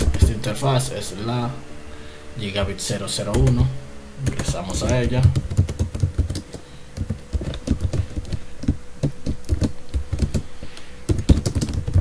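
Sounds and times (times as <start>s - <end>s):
computer keyboard typing: 4.2s - 10.5s, 11.1s - 12.0s.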